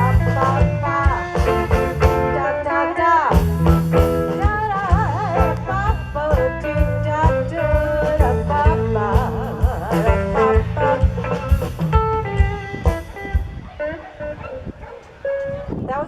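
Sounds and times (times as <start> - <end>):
steady drum beat: 0.0 - 2.4, 3.3 - 13.7
bass line: 0.0 - 2.7, 3.3 - 14.8.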